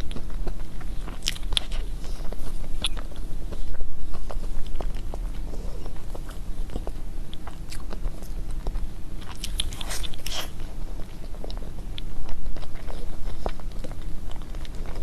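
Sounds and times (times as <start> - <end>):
person chewing cake: 0.0 - 15.0
person biting cake: 9.2 - 10.6.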